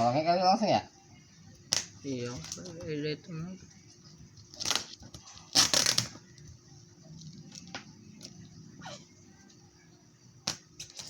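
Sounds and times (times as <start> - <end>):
plastic packaging crackling: 1.6 - 2.8, 4.4 - 6.4.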